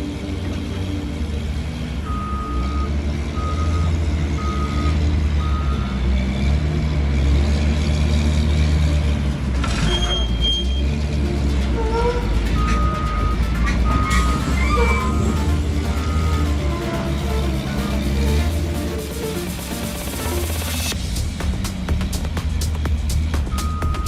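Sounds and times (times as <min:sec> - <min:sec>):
heavy machine engine rumbling: 0:00.0 - 0:24.0
reversing alarm beeping: 0:02.0 - 0:06.0, 0:12.5 - 0:17.8.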